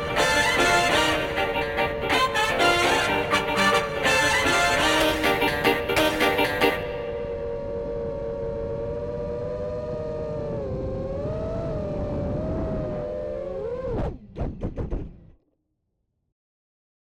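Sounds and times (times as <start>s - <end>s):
drone motors whining: 0.0s - 14.6s.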